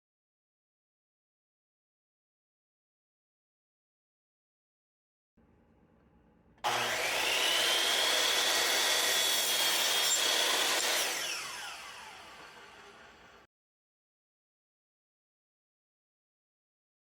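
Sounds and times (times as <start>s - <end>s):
power saw cutting wood: 6.6s - 13.5s.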